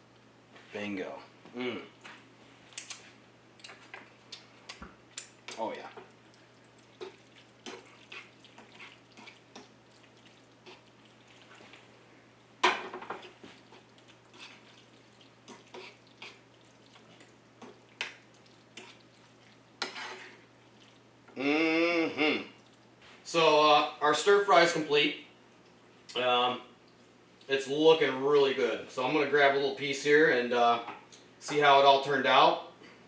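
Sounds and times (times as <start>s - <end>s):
light frying: 0.0s - 32.5s
utensil scraping against pan: 12.9s - 14.8s, 15.5s - 16.4s, 19.8s - 20.4s.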